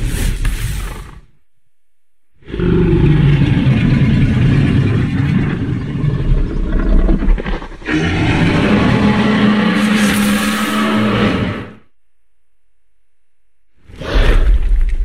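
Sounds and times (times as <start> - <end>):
creature growl-roar: 2.4 - 11.8.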